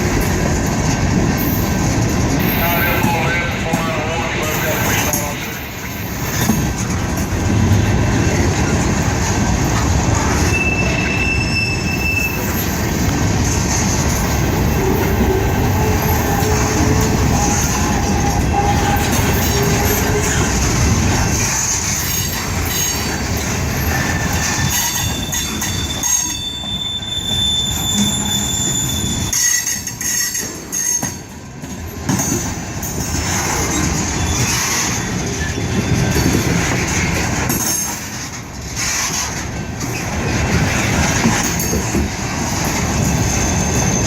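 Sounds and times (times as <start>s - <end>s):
train wheels rumbling on rails: 0.0s - 44.0s
high wheel squeal: 10.4s - 13.1s, 14.6s - 31.2s, 33.7s - 36.4s, 43.0s - 44.0s.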